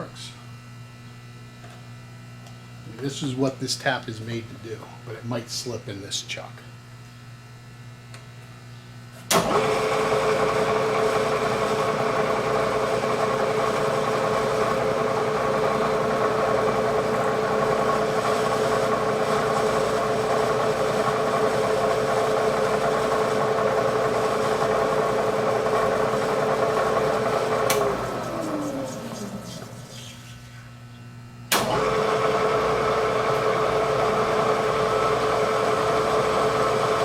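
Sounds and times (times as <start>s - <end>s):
milling machine motor running: 9.3s - 30.3s, 31.5s - 37.0s.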